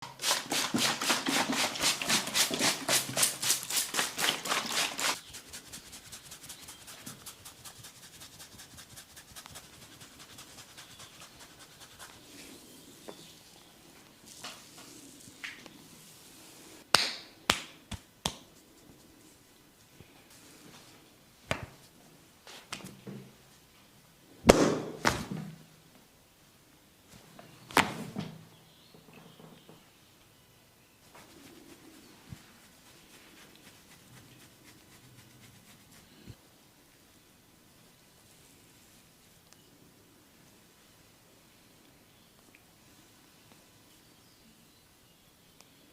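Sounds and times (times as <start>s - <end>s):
hand slaps on head: 16.9s - 18.5s.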